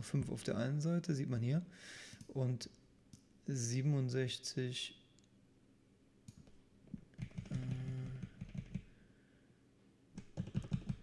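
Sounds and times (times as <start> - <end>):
keyboard typing: 7.1 - 8.9, 10.2 - 11.0.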